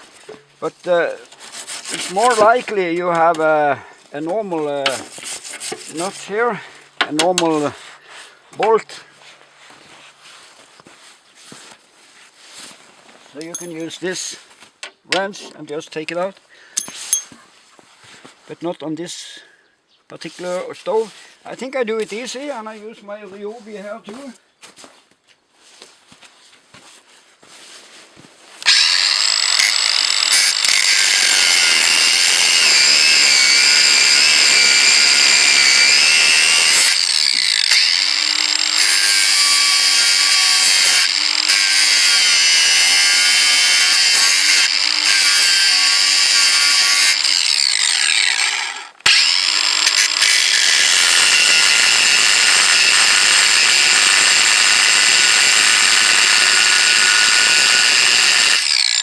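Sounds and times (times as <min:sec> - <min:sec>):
power tool cutting metal whine: 0:28.6 - 0:59.0.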